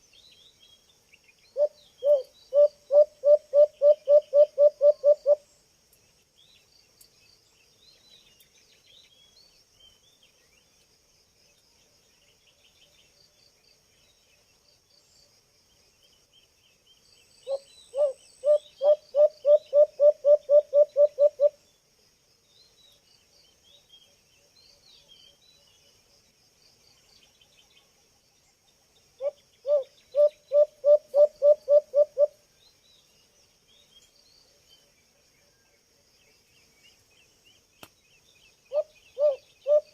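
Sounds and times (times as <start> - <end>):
faint bird chirps: 0.0 - 10.8, 16.0 - 21.8, 22.5 - 39.9
high insect drone: 0.0 - 39.9
dove hooting: 1.6 - 5.4, 17.5 - 21.6, 29.2 - 32.4, 38.7 - 39.9.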